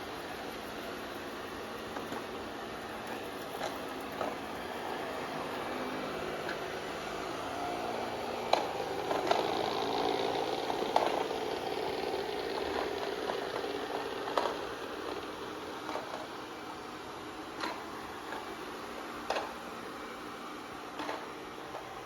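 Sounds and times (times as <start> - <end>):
robot vacuum motor whir: 0.0 - 22.0
sharp clicks and knocks: 17.6 - 18.5, 19.2 - 19.6.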